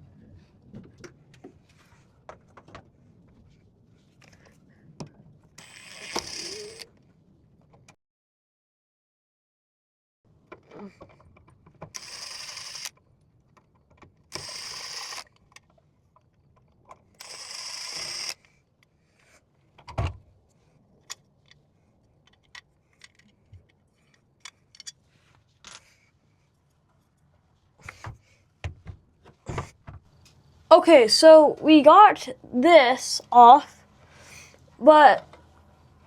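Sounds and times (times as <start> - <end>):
small power tool running: 5.6 - 6.9, 12.0 - 12.9, 14.3 - 15.3, 17.2 - 18.5
clicks and knocks of parts: 10.4 - 17.4, 21.0 - 25.0.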